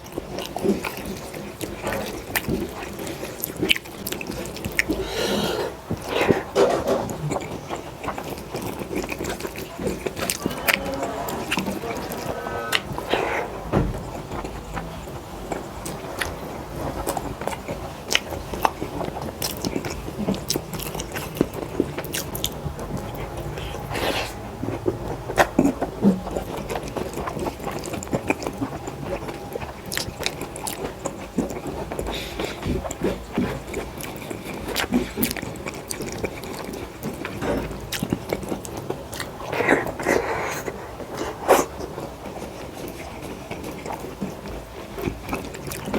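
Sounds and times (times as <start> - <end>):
scrapes: 9.8 - 16.3.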